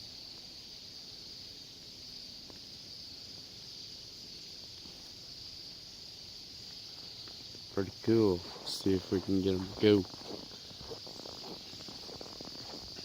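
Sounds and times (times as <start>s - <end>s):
flock of small birds trilling: 7.8s - 13.0s.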